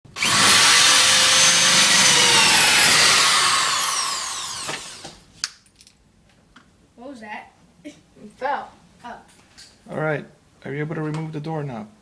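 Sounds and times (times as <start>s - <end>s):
power drill running: 0.1s - 5.2s.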